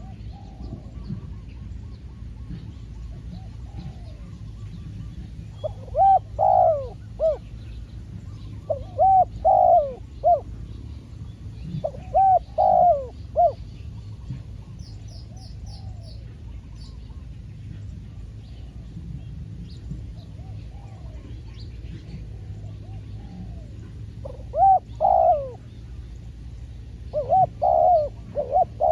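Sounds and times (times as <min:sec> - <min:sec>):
dove cooing: 0:00.0 - 0:28.9.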